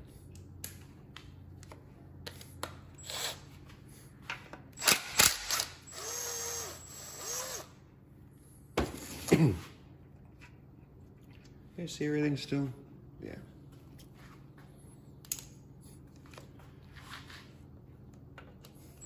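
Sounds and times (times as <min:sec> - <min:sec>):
tool clicks and ratcheting: 0:04.8 - 0:07.7.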